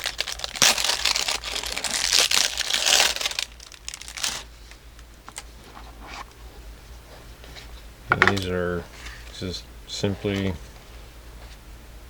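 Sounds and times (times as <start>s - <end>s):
packaging crinkling and tearing: 0.0s - 5.6s.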